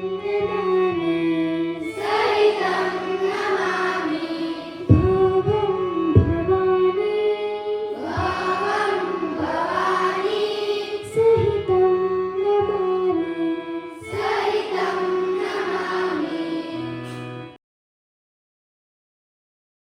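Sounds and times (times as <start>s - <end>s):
children singing together: 0.4s - 5.1s, 7.3s - 11.6s, 13.9s - 17.4s.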